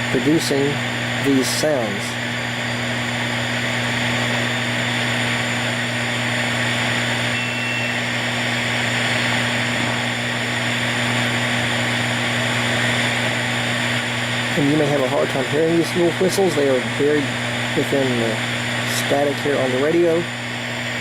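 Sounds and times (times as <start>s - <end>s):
radio static with low hum: 0.0s - 21.0s
faint whistle: 7.3s - 8.0s.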